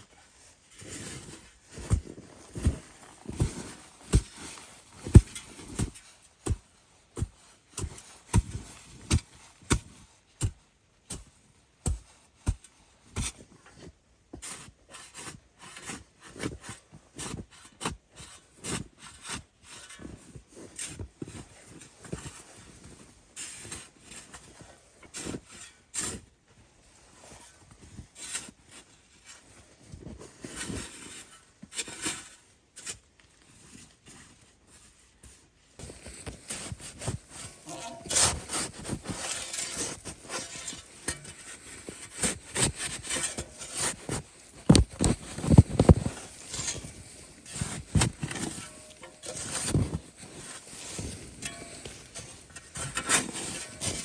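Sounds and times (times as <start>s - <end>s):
footsteps crunching through snow: 35.8s - 54.0s
snow scraping: 35.8s - 54.0s.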